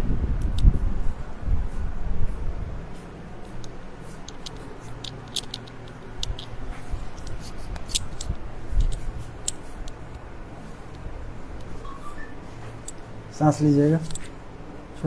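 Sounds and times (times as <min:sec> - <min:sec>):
low steady hum: 0:00.0 - 0:15.0
sharp clicks and rustles: 0:03.6 - 0:10.2.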